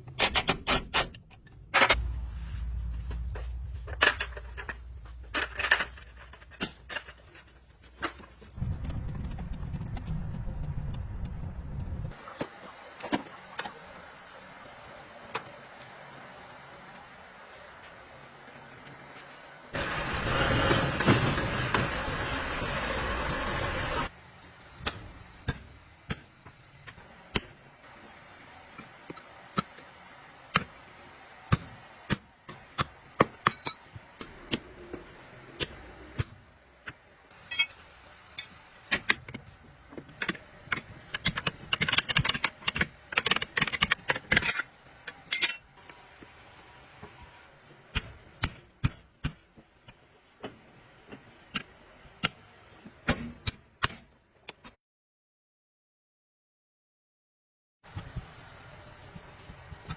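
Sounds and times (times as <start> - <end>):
loud even mechanical noise: 19.7 - 26.0
metal tools clinking: 37.4 - 38.6, 44.3 - 45.7.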